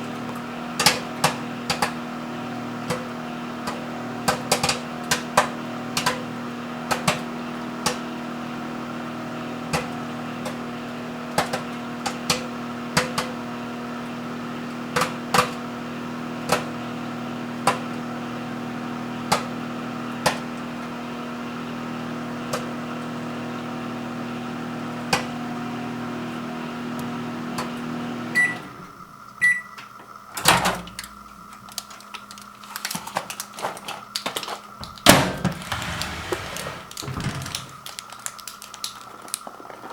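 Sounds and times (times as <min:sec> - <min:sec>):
microwave oven humming: 0:00.0 - 0:39.9
popcorn popping: 0:00.1 - 0:08.2, 0:09.5 - 0:13.5, 0:14.6 - 0:15.8, 0:16.4 - 0:16.8, 0:30.8 - 0:35.7, 0:36.9 - 0:39.9
microwave beeps: 0:28.3 - 0:30.0.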